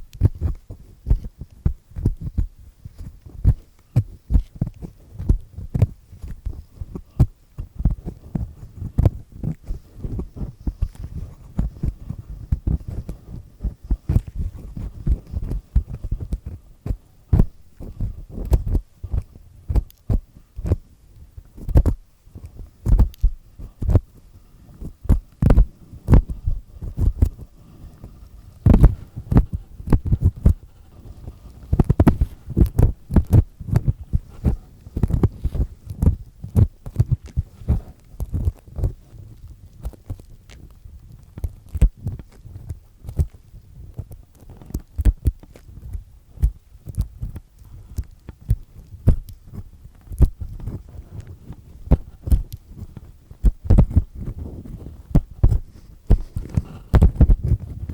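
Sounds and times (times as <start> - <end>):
earpick scraping an ear: 0.2 - 20.9, 21.5 - 24.2, 24.8 - 57.9
dull low thumps: 7.2 - 39.0, 51.8 - 57.9.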